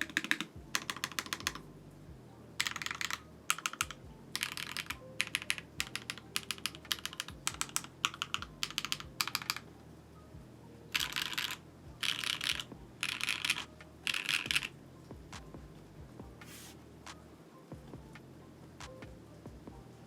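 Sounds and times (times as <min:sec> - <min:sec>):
mechanical keyboard typing: 0:00.0 - 0:01.6, 0:02.6 - 0:09.6, 0:10.9 - 0:14.7.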